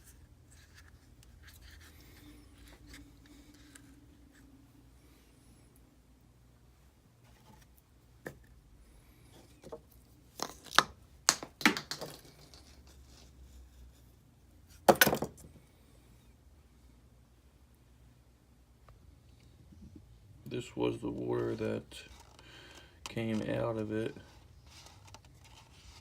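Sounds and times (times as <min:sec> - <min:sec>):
hard objects clattering: 0:10.4 - 0:12.9.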